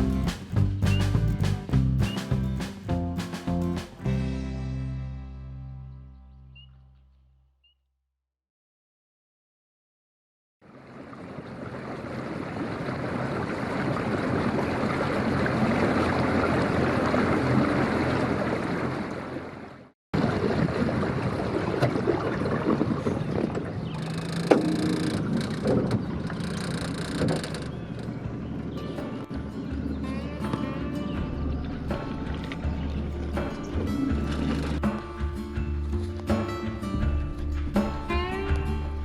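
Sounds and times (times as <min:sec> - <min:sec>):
water noise: 0:10.6 - 0:39.0
outboard motor running: 0:22.8 - 0:35.0
knocks and clicks: 0:24.1 - 0:28.1.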